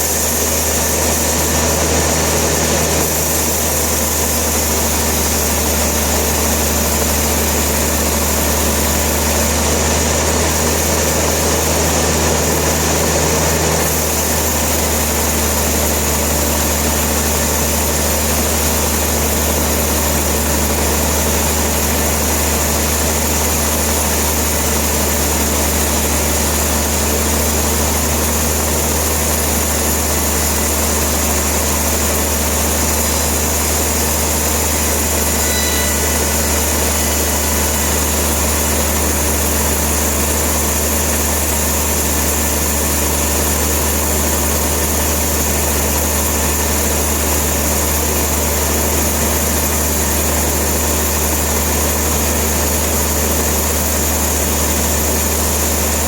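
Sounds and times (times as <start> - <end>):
machinery noisy hiss: 17.4 - 53.0
machinery low hum: 19.9 - 49.7.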